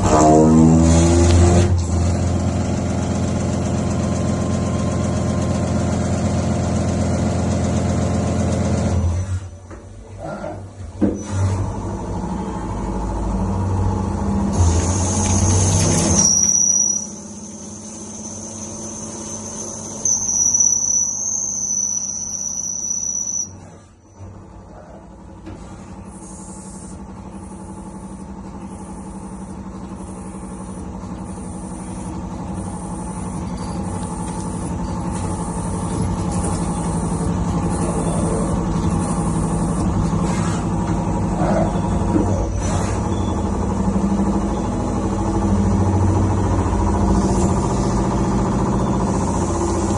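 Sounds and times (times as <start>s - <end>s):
machine running noise: 0.0s - 49.9s
lathe high-pitched whine: 14.5s - 23.7s.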